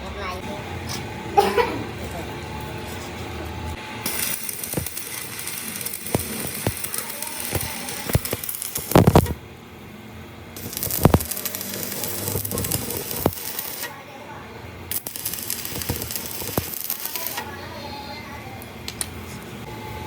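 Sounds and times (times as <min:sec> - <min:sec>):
crackling hiss: 0:04.1 - 0:09.4, 0:10.6 - 0:13.9.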